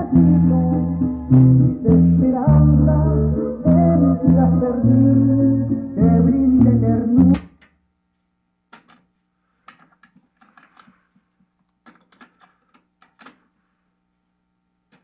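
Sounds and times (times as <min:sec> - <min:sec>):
stereo music: 0:00.0 - 0:07.5
faint low hum: 0:00.0 - 0:09.6.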